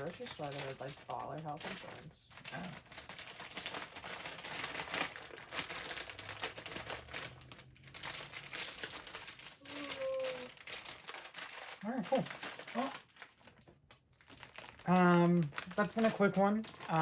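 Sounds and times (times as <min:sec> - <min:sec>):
chips crunching: 0:00.0 - 0:17.0.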